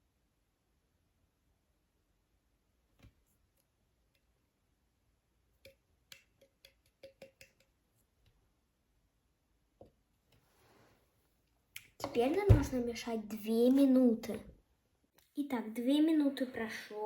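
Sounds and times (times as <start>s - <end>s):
plastic bottles clicking and tapping: 5.7s - 7.7s.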